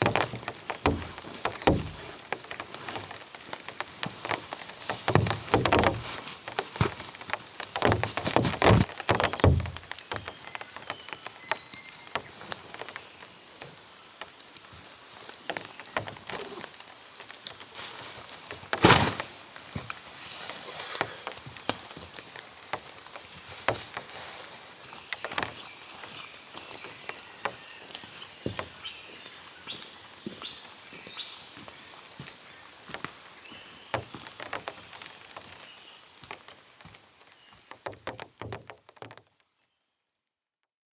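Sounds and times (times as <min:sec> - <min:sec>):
water drops falling on leaves: 0:00.0 - 0:39.6
bird chirping: 0:24.9 - 0:32.0.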